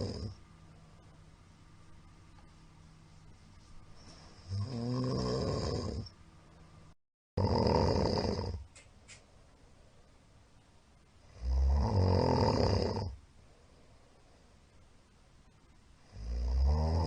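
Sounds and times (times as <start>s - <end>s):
man snoring loudly: 0.0s - 0.4s, 4.4s - 6.1s, 7.4s - 8.6s, 11.3s - 13.2s, 16.1s - 17.0s
quiet breathing: 2.4s - 6.8s, 12.8s - 14.9s.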